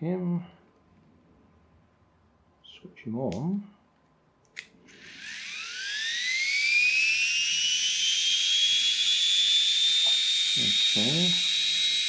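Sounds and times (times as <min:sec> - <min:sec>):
small electric motor whining: 0:04.9 - 0:12.0.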